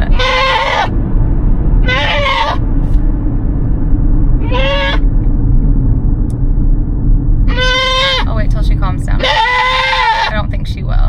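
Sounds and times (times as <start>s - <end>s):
goat bleating: 0.0s - 0.9s, 1.9s - 2.6s, 4.4s - 5.0s, 7.5s - 8.2s, 9.2s - 10.4s
steady low rumble: 0.0s - 11.0s.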